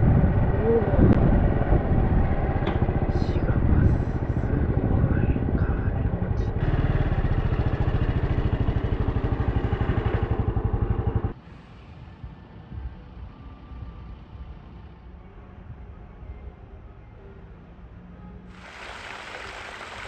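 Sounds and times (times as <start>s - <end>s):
small motorcycle engine running: 0.0s - 11.4s
road noise: 0.0s - 15.6s.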